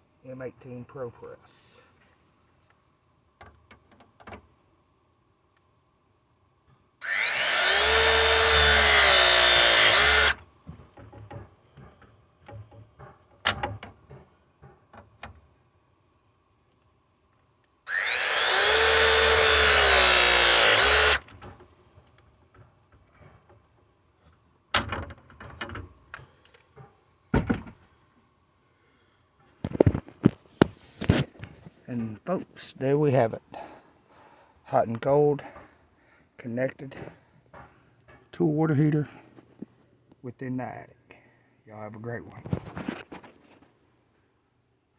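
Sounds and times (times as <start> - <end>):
battery press tool motor: 7.0 - 10.4, 17.9 - 21.3
clicks and knocks of handling tool: 10.7 - 15.5.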